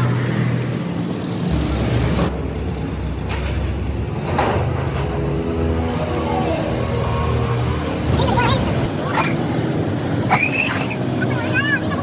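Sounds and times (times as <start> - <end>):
heavy vehicle engine running: 0.7 - 5.8, 8.0 - 12.0.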